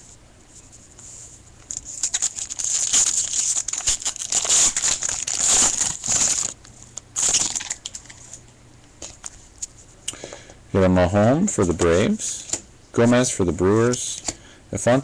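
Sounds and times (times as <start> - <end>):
packaging crinkling and rustling: 1.6 - 8.4.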